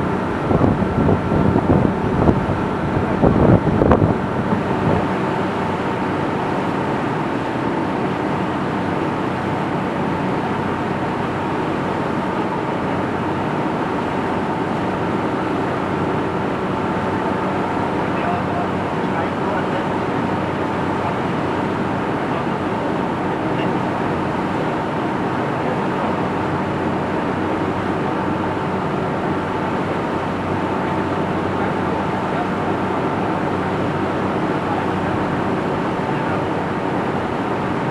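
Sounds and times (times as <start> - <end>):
wind buffeting microphone: 0.0 - 7.3
boat engines droning: 0.0 - 37.9.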